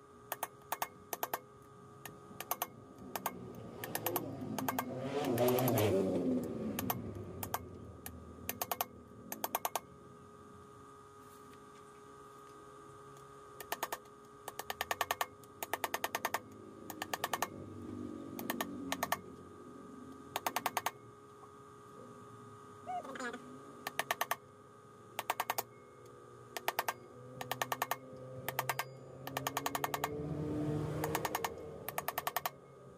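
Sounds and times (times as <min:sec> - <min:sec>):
ratchet wrench clicking: 0:00.3 - 0:01.4, 0:02.0 - 0:06.0, 0:06.8 - 0:09.8, 0:13.6 - 0:17.5, 0:18.4 - 0:19.2, 0:20.3 - 0:20.9, 0:23.8 - 0:24.4, 0:25.2 - 0:25.7, 0:26.6 - 0:30.2, 0:31.0 - 0:32.6.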